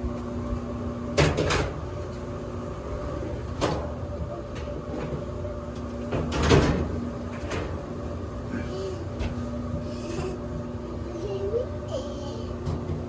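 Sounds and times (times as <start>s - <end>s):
dryer parts knocking and clunking: 3.6s - 7.8s.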